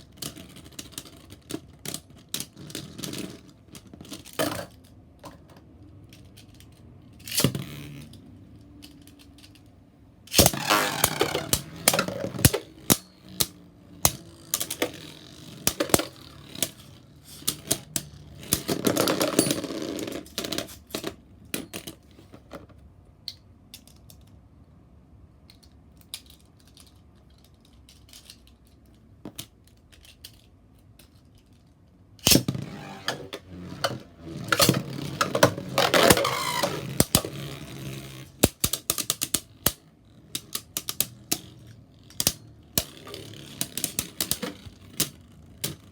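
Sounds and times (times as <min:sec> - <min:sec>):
spinning tops clacking together: 0:10.3 - 0:21.1, 0:32.2 - 0:45.9.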